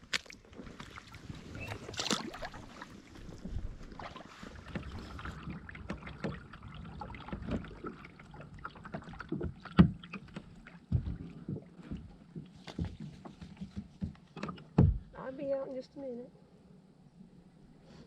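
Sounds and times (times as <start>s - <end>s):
paddle strokes and splashes: 0.0s - 15.0s
knocks against kayak hull: 9.3s - 15.1s.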